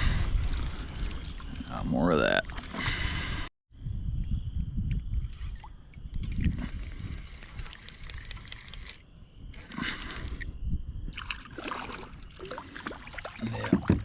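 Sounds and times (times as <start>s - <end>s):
water sloshing around kayak: 0.0s - 3.3s, 11.1s - 14.0s.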